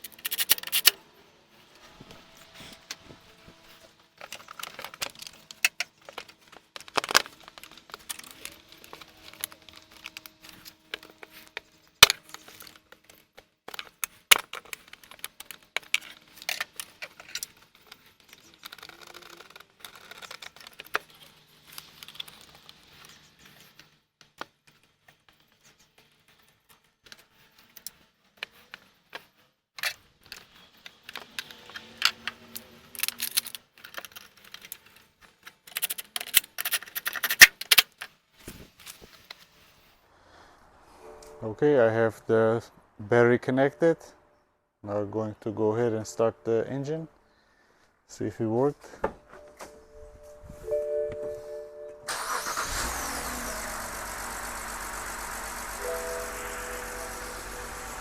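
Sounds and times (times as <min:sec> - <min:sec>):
metallic clicks and clinks of tools: 0:00.0 - 0:01.0, 0:27.1 - 0:38.1.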